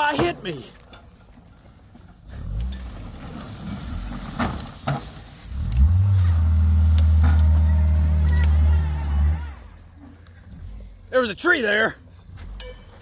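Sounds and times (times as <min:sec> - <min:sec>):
car engine revving under load: 0:05.4 - 0:11.1.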